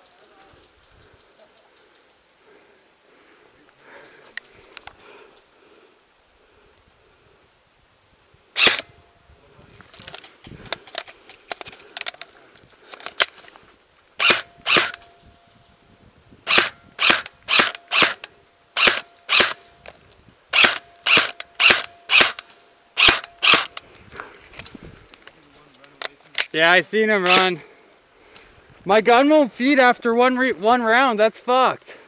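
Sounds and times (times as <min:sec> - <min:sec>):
airsoft gun shots: 0:08.6 - 0:08.9, 0:14.2 - 0:15.0, 0:16.5 - 0:19.6, 0:20.5 - 0:22.4, 0:23.0 - 0:23.8, 0:27.3 - 0:27.5.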